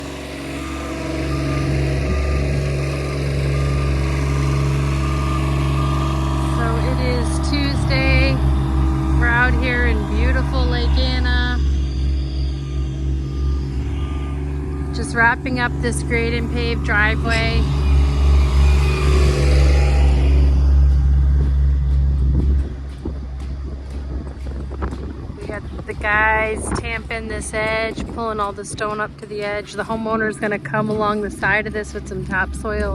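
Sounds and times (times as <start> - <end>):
backup alarm beeping: 0.0 - 19.8
diesel engine running: 0.0 - 32.9.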